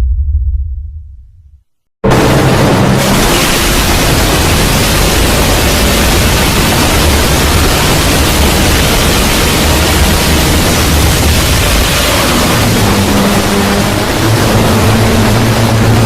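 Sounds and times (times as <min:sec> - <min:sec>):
deep rumble: 0:00.0 - 0:16.0
loud static-like noise: 0:02.0 - 0:16.0.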